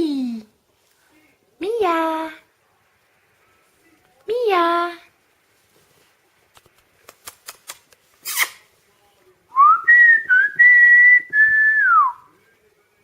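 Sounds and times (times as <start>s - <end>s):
person whistling: 9.6s - 12.2s.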